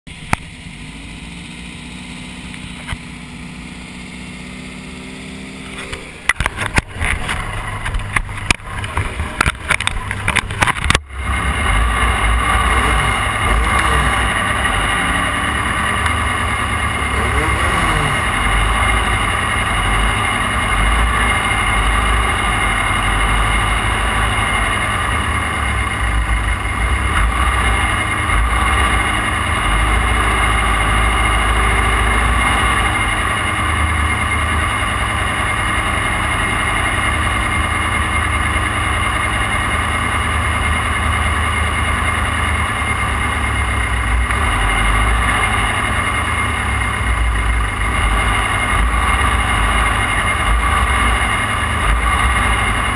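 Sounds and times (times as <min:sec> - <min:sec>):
race car engine rumbling: 0:00.0 - 0:52.9.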